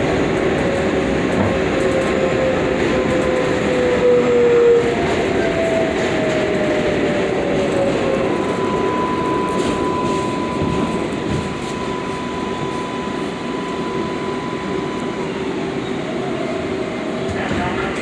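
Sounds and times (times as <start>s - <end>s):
subway wheels rumbling on rails: 0.0s - 18.0s
high whine: 7.3s - 16.0s.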